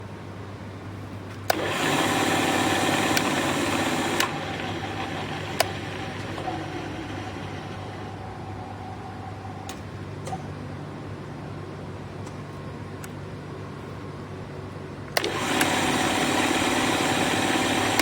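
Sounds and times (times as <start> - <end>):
machine switch clicks: 1.4 - 6.8, 15.1 - 18.0
drilling machine motor whirring: 1.5 - 9.2, 15.2 - 18.0.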